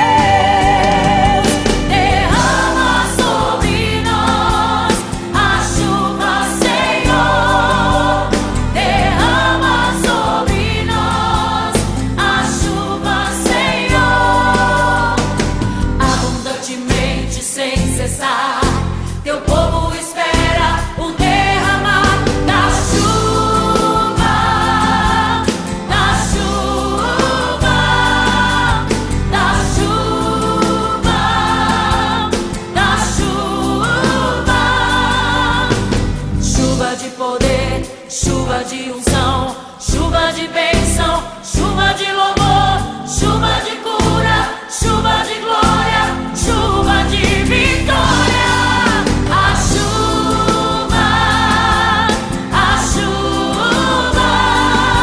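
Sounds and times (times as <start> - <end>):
instrumental backing with beat: 0.0 - 17.4, 20.4 - 37.6
band with drums and bass: 0.0 - 38.5, 39.1 - 55.0
choir-like singing with vibrato: 0.0 - 55.0.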